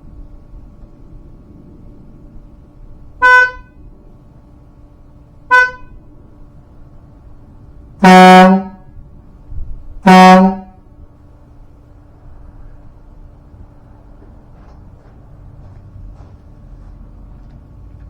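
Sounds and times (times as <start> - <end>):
deep air horn blasts: 3.0 - 4.0, 5.4 - 6.2, 7.9 - 9.1, 9.8 - 11.0
high-pitched vehicle horn honks: 3.2 - 3.8, 5.5 - 6.0, 8.0 - 8.9, 10.0 - 10.8.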